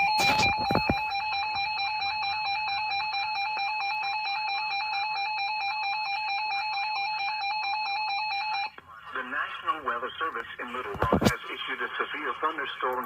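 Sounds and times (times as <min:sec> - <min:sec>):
harsh two-tone alert signal: 0:00.0 - 0:03.4.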